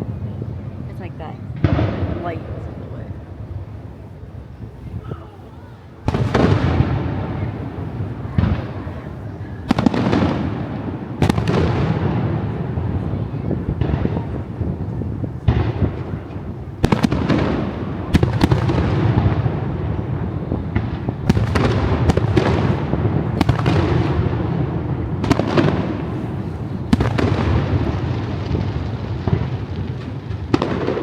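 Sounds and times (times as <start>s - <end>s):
low rumble of booms: 0.0s - 5.1s, 6.0s - 31.0s.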